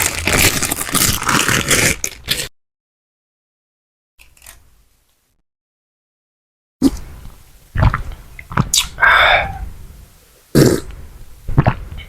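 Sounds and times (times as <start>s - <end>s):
mouth smacks and bites: 7.8s - 9.0s, 10.6s - 12.0s
rasping mouth sound: 10.5s - 12.0s.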